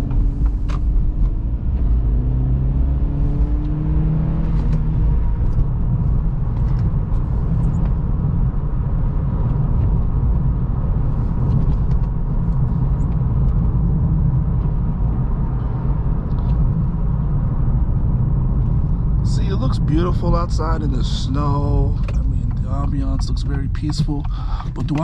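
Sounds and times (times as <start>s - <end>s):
car road and engine rumble: 0.0s - 25.0s.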